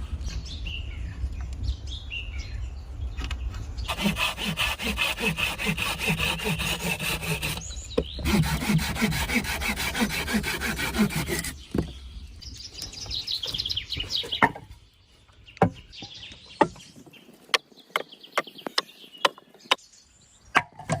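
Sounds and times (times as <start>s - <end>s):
hand saw cutting wood: 3.9s - 11.6s.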